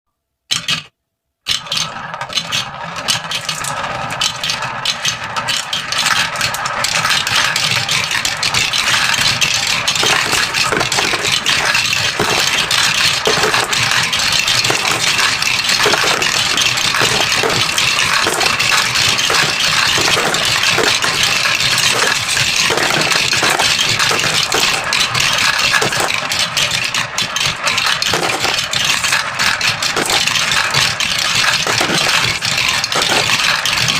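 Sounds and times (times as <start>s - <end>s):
marbles rattling down a track: 1.5s - 33.9s.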